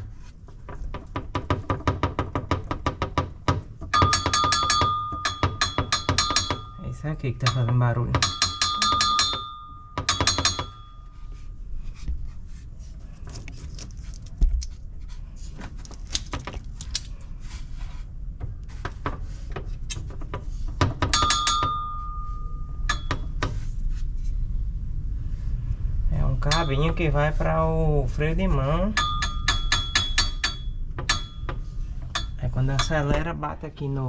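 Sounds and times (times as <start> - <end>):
metal tube ringing like a bell: 3.9 - 11.3, 21.1 - 23.4, 26.4 - 27.2, 28.8 - 33.1.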